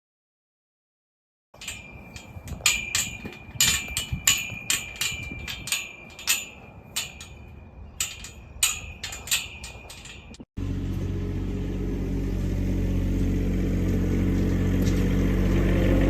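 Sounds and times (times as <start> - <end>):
sharp metal clanks ringing: 1.6 - 10.5.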